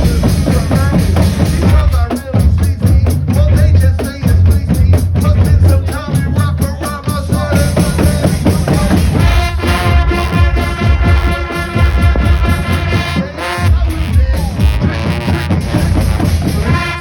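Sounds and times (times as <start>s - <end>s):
drum kit with booming bass drum: 0.0s - 17.0s
held backing music tones: 6.6s - 17.0s.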